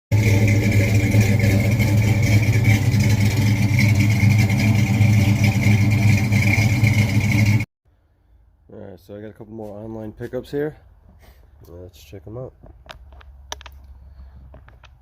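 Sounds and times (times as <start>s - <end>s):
vehicle engine running: 0.1s - 7.7s.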